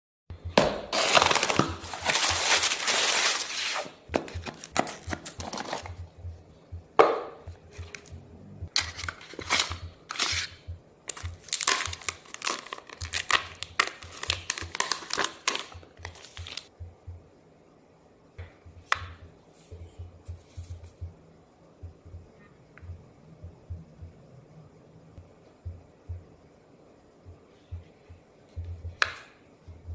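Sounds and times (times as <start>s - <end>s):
packaging tearing and crinkling: 0.9s - 5.9s, 8.8s - 10.5s, 11.1s - 16.7s
rustling and handling: 0.9s - 6.2s, 8.7s - 16.7s.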